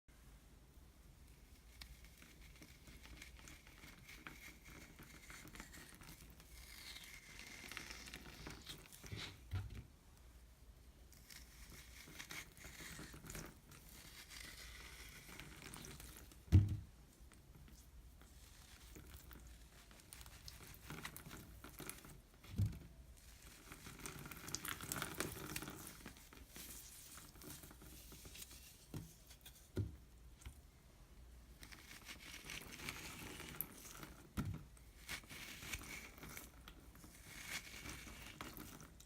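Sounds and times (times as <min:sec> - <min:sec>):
thump: 0:16.5 - 0:16.9.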